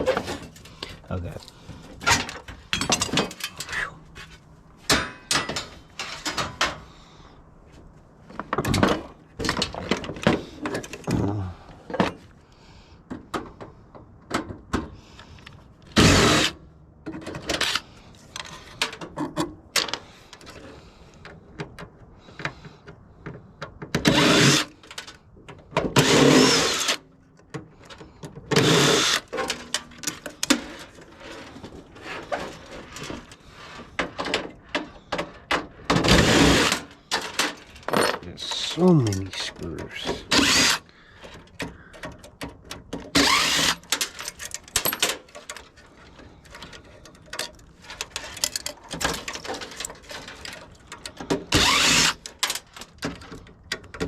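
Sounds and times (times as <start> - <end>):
metal parts clattering: 0.0 - 3.8, 4.9 - 6.8, 27.8 - 54.0.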